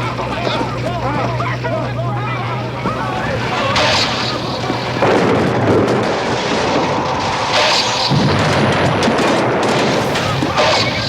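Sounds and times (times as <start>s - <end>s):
rush of flames: 2.7s - 11.0s
booming explosions: 3.1s - 11.0s.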